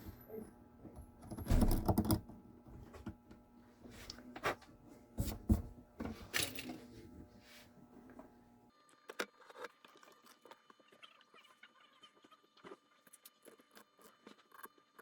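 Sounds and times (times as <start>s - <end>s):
objects knocking and rustling: 0.8s - 7.4s
sharp knocks and clicks: 0.9s - 3.3s.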